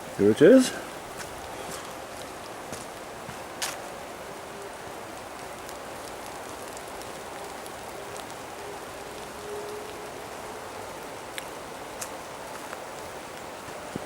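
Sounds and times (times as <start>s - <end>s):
light rain pattering: 0.0s - 14.0s
faint drip ticks: 11.3s - 14.0s.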